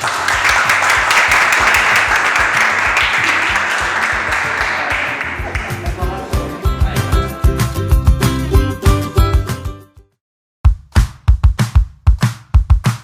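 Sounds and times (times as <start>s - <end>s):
applause: 0.0s - 6.4s
background music with steady beat: 10.7s - 13.0s.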